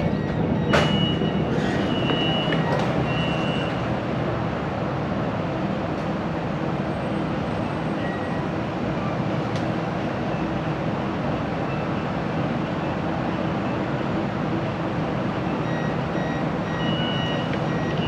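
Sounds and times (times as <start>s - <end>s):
train cabin rumbling: 0.0s - 4.8s.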